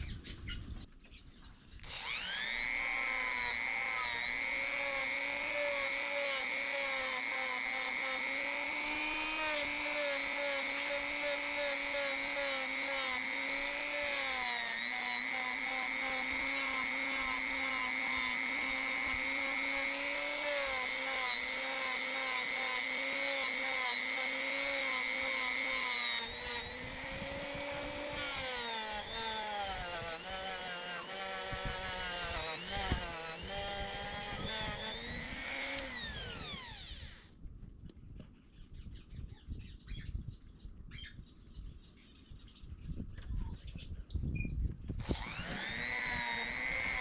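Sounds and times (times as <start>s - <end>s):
electric rotary tool running: 1.8s - 37.3s, 45.0s - 47.0s.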